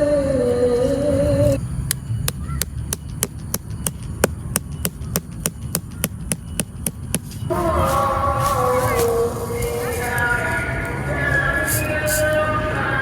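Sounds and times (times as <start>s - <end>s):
knife chopping on cutting board: 1.9s - 7.4s.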